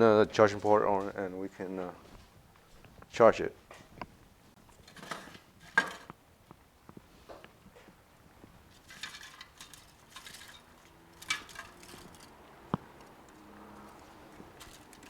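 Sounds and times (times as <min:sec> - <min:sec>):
small tools clicking and tapping: 0:08.7 - 0:15.0.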